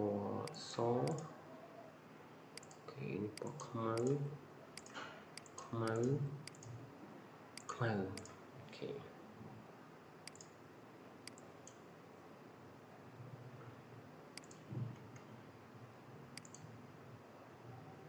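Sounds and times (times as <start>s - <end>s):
faint room hum: 0.0s - 18.0s
computer mouse clicking: 0.4s - 1.3s, 2.6s - 4.2s, 4.8s - 6.8s, 10.2s - 10.6s, 11.2s - 11.8s, 14.4s - 15.3s, 16.4s - 16.7s.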